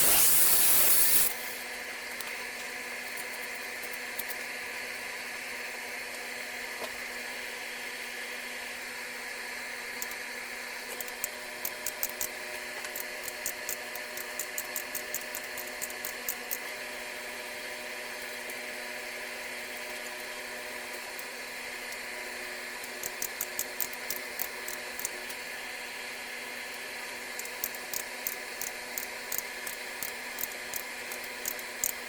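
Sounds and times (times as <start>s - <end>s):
small electric motor humming: 0.0s - 2.3s, 9.5s - 32.0s.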